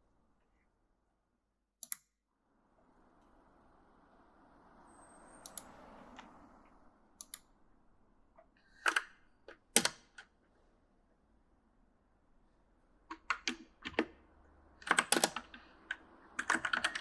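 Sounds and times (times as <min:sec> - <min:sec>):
mechanical keyboard keys clacking: 0:13.1 - 0:14.1, 0:14.8 - 0:17.0.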